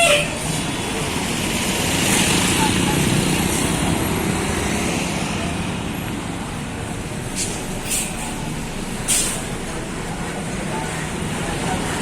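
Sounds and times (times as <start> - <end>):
bus engine and road rumble: 0.0 - 12.0
air brake hisses: 9.1 - 9.5.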